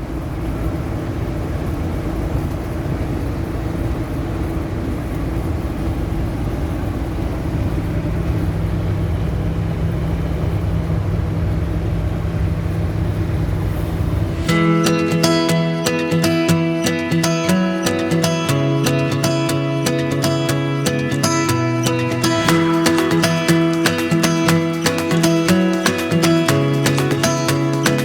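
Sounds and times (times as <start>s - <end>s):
vehicle engine and road rumble: 0.0s - 14.5s.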